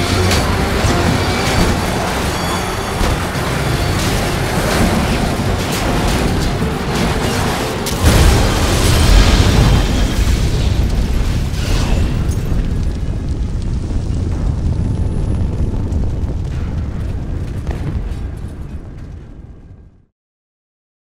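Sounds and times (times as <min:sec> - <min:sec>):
action film music: 0:00.0 - 0:19.9
booms and sharp impacts: 0:00.0 - 0:20.1.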